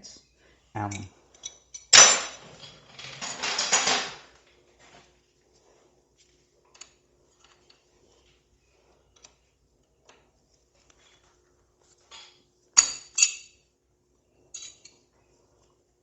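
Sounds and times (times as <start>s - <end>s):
metal wrenches clinking and clanking: 0.9s - 4.3s.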